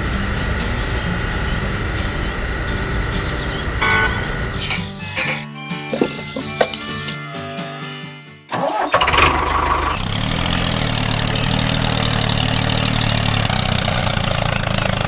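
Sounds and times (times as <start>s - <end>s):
background music: 3.4s - 9.0s
small engine starting and idling: 8.5s - 15.0s.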